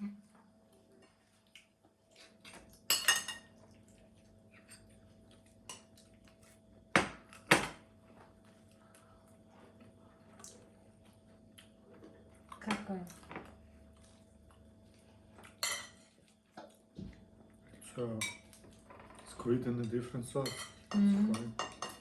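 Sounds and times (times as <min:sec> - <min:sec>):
cutlery clinking on plates: 0:02.5 - 0:03.5, 0:15.6 - 0:16.1, 0:19.8 - 0:22.0.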